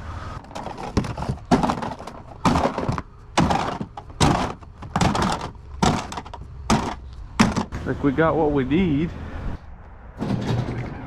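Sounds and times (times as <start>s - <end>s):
thuds and clunks: 0.4s - 7.8s, 10.2s - 11.0s.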